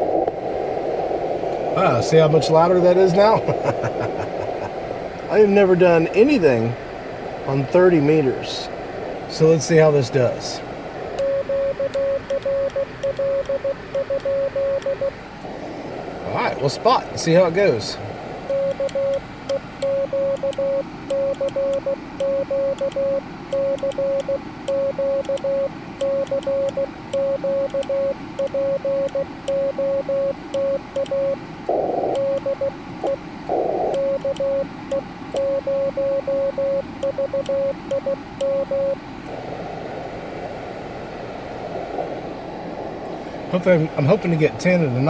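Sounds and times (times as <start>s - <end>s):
receiver hiss: 0.0s - 45.0s
morse code tone: 11.2s - 15.2s, 18.5s - 39.0s.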